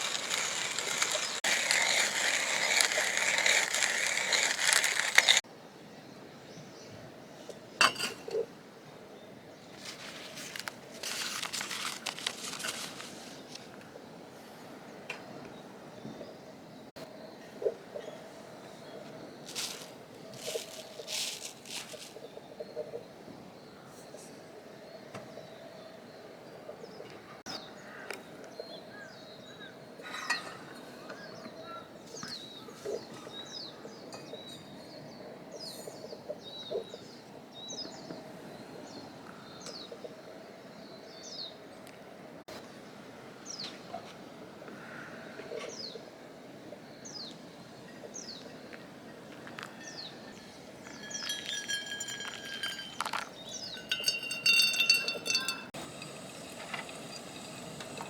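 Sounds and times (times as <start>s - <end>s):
metallic clinks: 50.8s - 56.2s.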